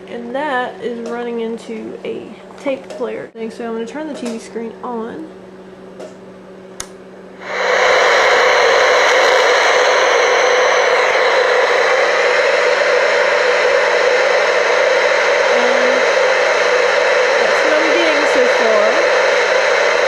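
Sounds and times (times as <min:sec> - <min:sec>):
loud static hiss: 0:07.4 - 0:20.0.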